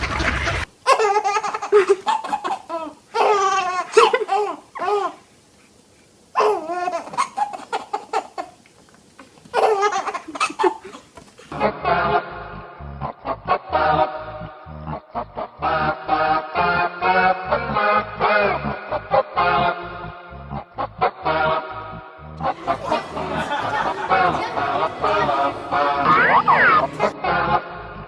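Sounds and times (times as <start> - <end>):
young child laughing: 0.0 - 5.2, 6.4 - 8.6, 9.5 - 11.2, 22.4 - 27.2.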